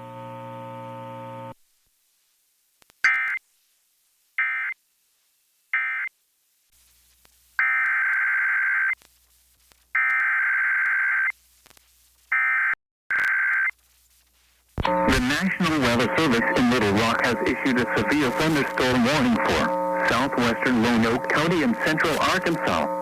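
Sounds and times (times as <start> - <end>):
emergency alert data tones: 14.9 - 23.0.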